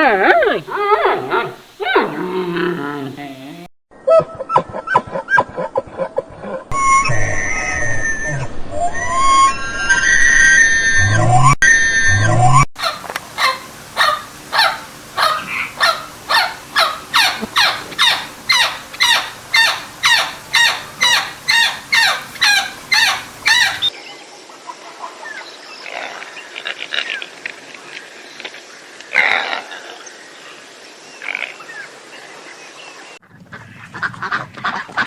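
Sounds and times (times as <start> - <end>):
bird calling: 0.0 - 3.7, 12.8 - 23.9.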